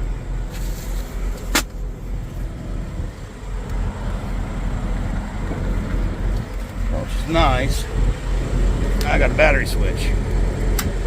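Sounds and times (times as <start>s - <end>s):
vehicle engine idling: 0.0s - 11.0s
sharp click: 10.8s - 11.0s.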